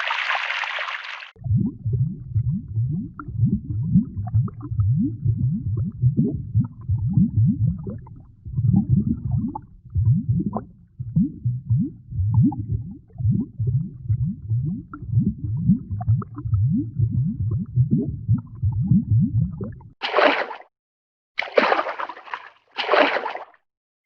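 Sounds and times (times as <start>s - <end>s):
water splash: 0.0s - 1.4s, 20.0s - 20.7s, 21.4s - 23.6s
cartoon underwater bubbling: 0.0s - 20.4s.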